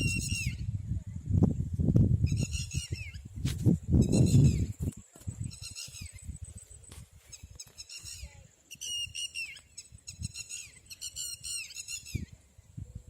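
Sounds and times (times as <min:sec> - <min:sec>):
lapwing calling: 0:07.3 - 0:12.3.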